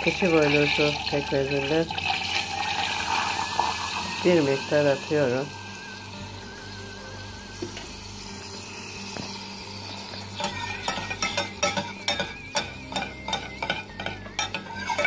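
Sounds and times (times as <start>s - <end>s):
butter sizzling in a pot: 0.0s - 15.0s
spoon clinking against pot: 10.1s - 15.0s.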